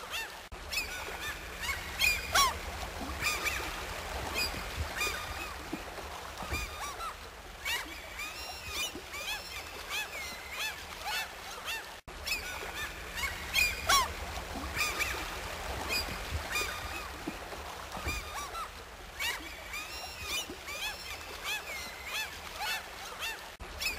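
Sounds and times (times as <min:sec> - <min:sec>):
waterfowl honking and squawking: 0:00.0 - 0:23.9.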